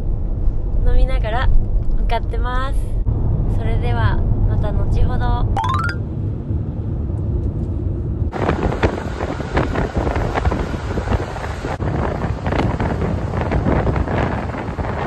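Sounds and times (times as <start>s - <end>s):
low rumble: 0.0s - 9.0s
wind buffeting microphone: 8.1s - 15.0s.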